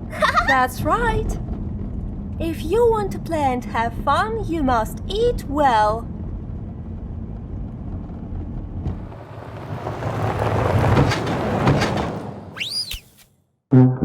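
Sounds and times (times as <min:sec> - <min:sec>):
rush of car driving: 0:06.0 - 0:12.8
high whistle: 0:12.6 - 0:13.2
cartoon engine hum: 0:12.6 - 0:14.0.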